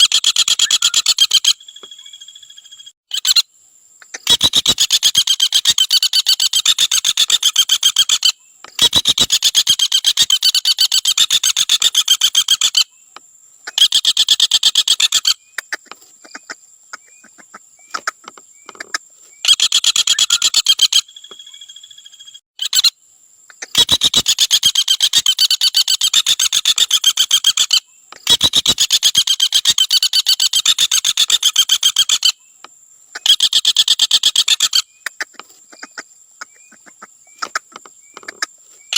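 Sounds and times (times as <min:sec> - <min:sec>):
woodpecker rattling trill call: 0:00.0 - 0:03.4, 0:04.0 - 0:38.9.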